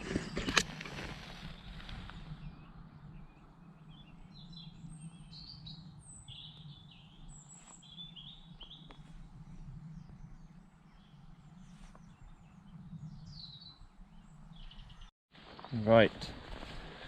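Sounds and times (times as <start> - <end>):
small birds chirping: 1.5 - 15.1.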